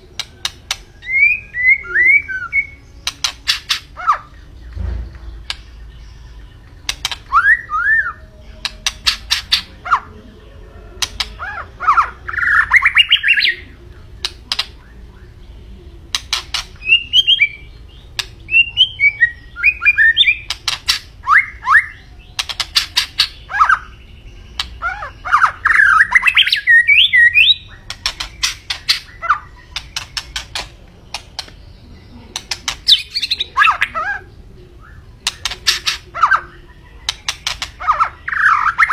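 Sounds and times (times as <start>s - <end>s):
songbird clicking and whistling: 0.0s - 5.9s, 6.7s - 9.8s, 11.0s - 11.5s, 14.2s - 14.9s, 16.1s - 31.7s, 32.3s - 34.0s, 35.2s - 36.4s, 37.0s - 38.9s.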